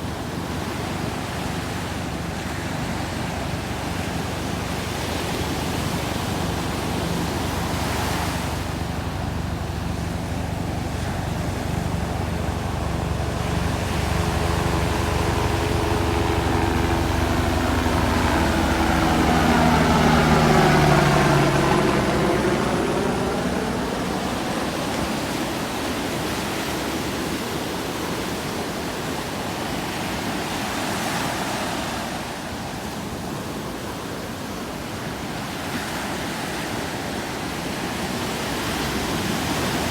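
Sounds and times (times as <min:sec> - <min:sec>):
motor passing by: 0:00.8 - 0:26.8.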